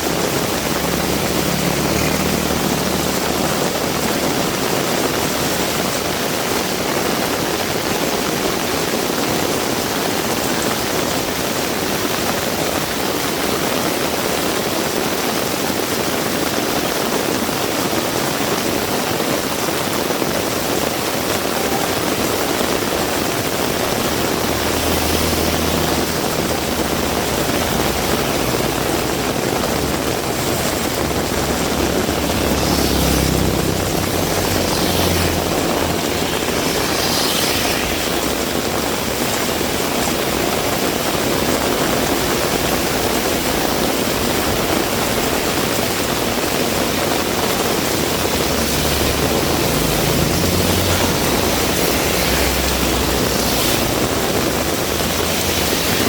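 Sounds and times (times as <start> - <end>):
vehicle engine passing: 0.0 - 8.6, 20.6 - 56.0
heavy rain falling: 0.0 - 56.0.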